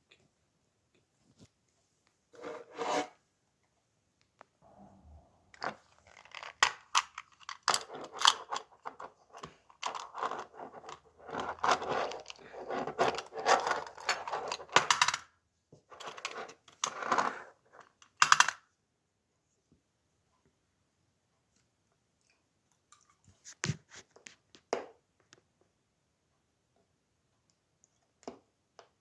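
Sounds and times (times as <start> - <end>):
packaging crinkling and rustling: 5.9 - 14.8.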